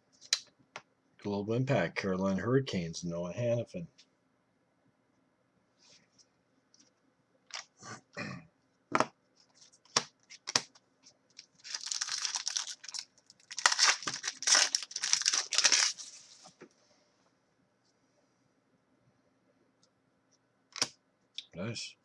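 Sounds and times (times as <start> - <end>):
cards clicking and tapping: 9.8 - 10.8
card pack wrapper tearing and crinkling: 11.4 - 16.2.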